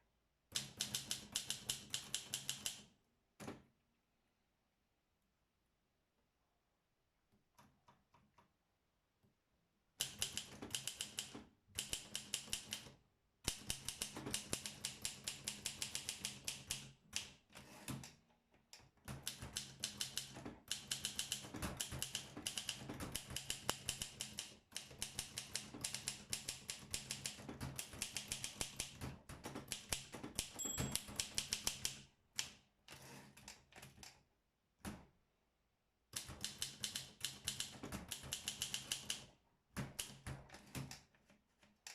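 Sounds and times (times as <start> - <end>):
typewriter key strikes: 10.0 - 12.8, 19.3 - 32.0.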